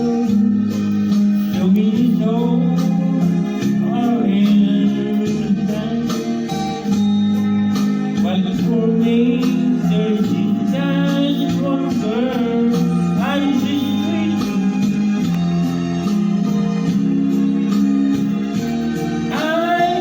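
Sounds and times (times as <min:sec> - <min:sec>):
man singing: 0:00.0 - 0:06.6, 0:08.1 - 0:15.4, 0:19.3 - 0:20.0
karaoke music through loudspeaker: 0:00.0 - 0:20.0.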